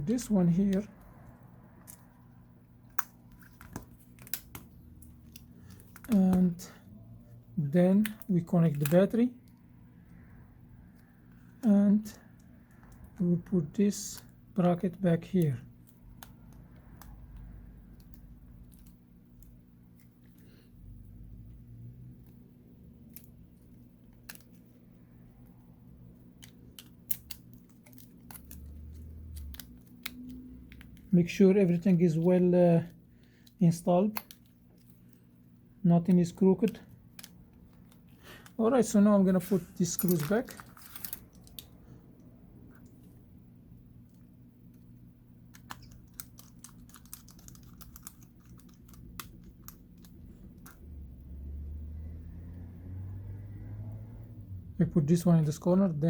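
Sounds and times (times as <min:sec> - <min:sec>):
low steady hum: 0:00.0 - 0:56.0
phone parts clicking into place: 0:39.8 - 0:41.6
small screws and screwdriver clicking: 0:45.5 - 0:50.8.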